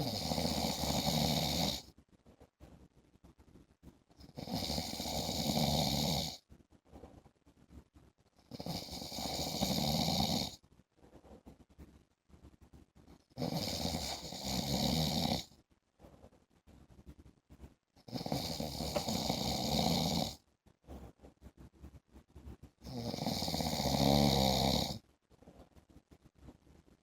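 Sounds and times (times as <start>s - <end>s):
man snoring: 0.0s - 1.8s, 4.4s - 6.4s, 8.5s - 10.6s, 13.4s - 15.5s, 18.1s - 20.4s, 22.9s - 25.0s.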